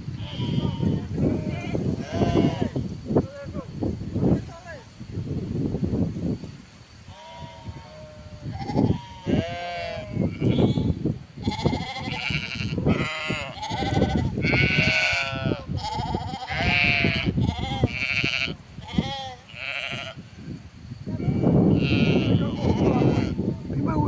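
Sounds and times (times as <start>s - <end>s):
sheep bleating: 0.2s - 2.8s, 7.1s - 20.2s, 21.2s - 23.5s.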